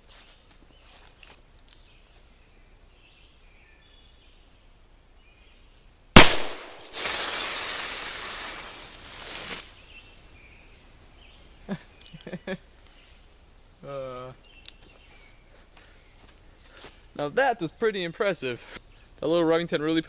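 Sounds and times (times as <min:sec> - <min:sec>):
revolver gunshot: 0:06.2 - 0:07.9
soda bottle hissing spray: 0:06.9 - 0:09.6.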